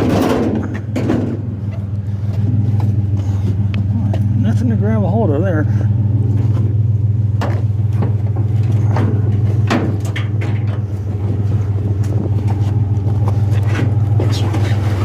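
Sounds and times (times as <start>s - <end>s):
knocks and scrapes of metal: 0.0s - 1.9s, 7.4s - 11.1s
vehicle engine idling: 0.0s - 15.0s.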